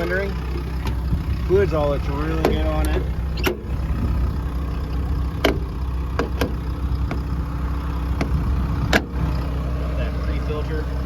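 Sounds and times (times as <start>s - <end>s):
excavator diesel engine idling: 0.0s - 11.0s
sharp clicks and knocks: 2.4s - 3.7s, 5.4s - 7.3s, 8.2s - 9.2s.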